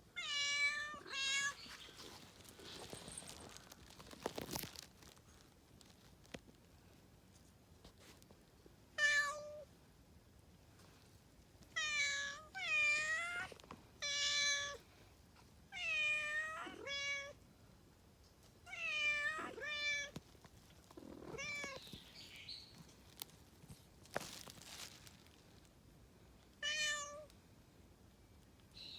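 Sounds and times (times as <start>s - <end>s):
cat meowing: 18.7s - 20.2s, 21.0s - 21.8s, 26.6s - 27.3s.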